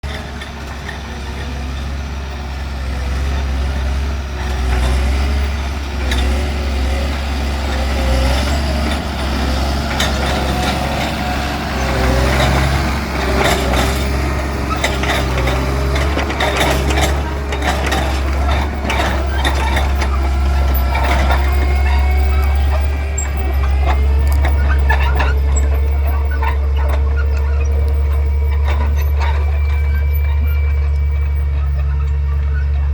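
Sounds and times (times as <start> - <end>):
diesel machine running with whine: 0.0 - 32.9
sharp metal clanks and knocks: 11.8 - 32.2.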